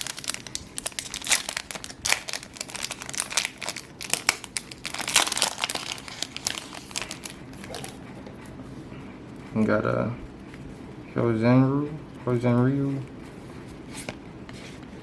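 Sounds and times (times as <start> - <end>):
foil wrapper crinkling: 0.0 - 8.0.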